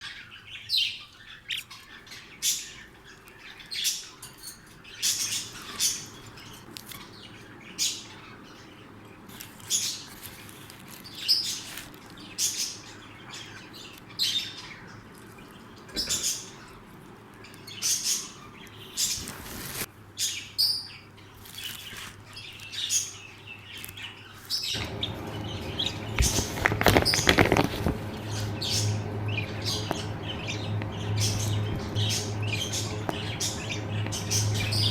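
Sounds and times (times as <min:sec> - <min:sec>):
birds chirping: 0:00.0 - 0:34.9
steady low hum: 0:24.8 - 0:34.9.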